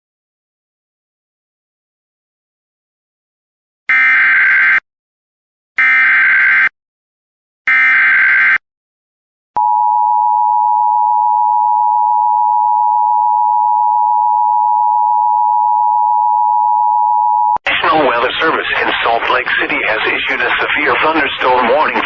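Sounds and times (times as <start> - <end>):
long steady alert tone: 9.6 - 17.6.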